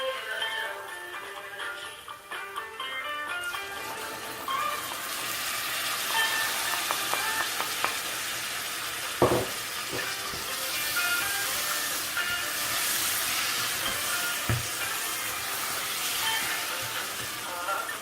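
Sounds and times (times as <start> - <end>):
food sizzling in a hot pan: 3.5 - 18.0
utensil knocking against pan: 9.2 - 10.4, 13.9 - 14.8.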